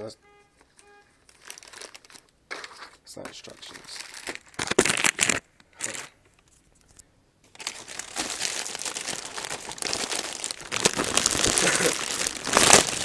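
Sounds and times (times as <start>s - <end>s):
packaging crinkling: 0.6s - 13.0s.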